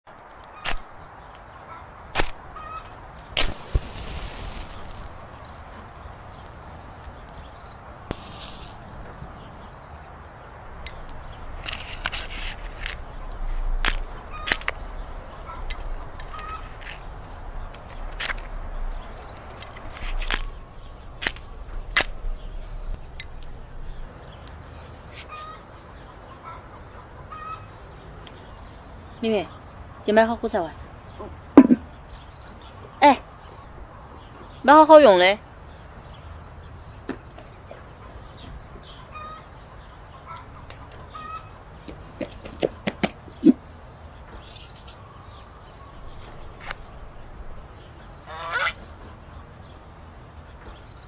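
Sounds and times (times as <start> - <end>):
firecrackers cracking: 2.1 - 6.7, 8.0 - 9.0, 10.9 - 15.0, 19.4 - 23.6
fizzing hiss: 2.2 - 7.1, 8.0 - 9.0.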